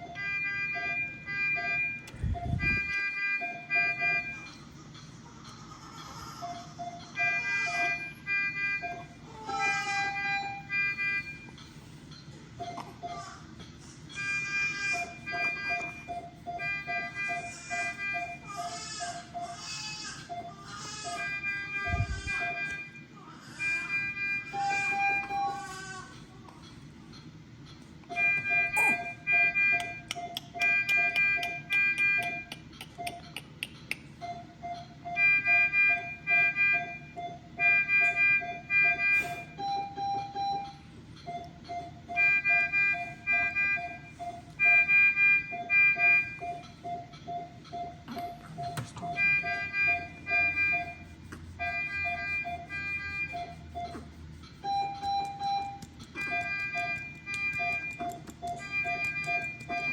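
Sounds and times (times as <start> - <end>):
short pulsing alarm tone: 0.0 - 4.5, 28.1 - 32.5, 34.2 - 59.9.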